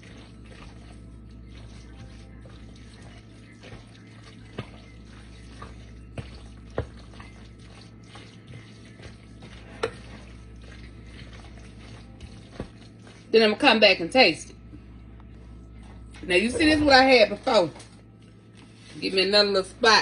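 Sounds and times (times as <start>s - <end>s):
spoon stirring wet food: 0.0s - 13.8s.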